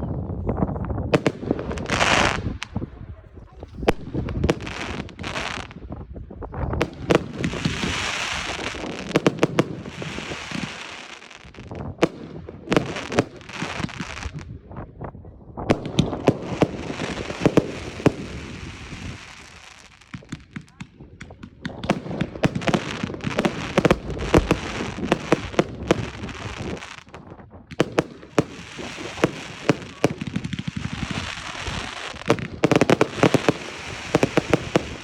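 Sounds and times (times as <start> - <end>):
firework bangs: 1.0 - 3.0, 3.9 - 14.5, 15.7 - 35.0
firework crackling hiss: 6.8 - 11.7, 21.7 - 35.0.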